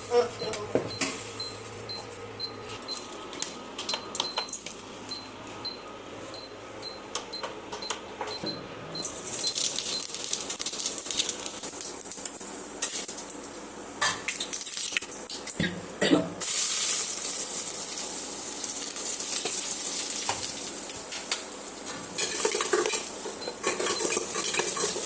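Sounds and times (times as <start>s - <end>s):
kitchen utensils and dishes clinking: 21.1s - 25.0s.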